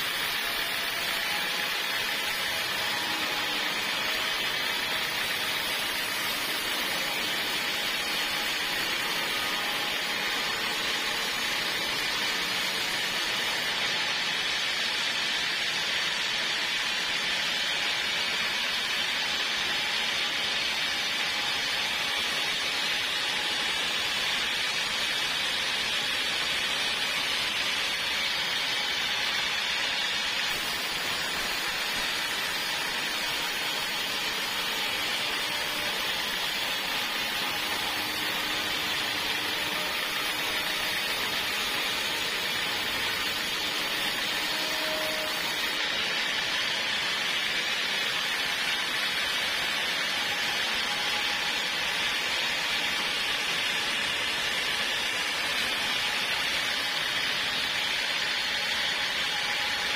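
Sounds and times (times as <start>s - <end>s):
saw cutting through log: 0.0s - 59.9s.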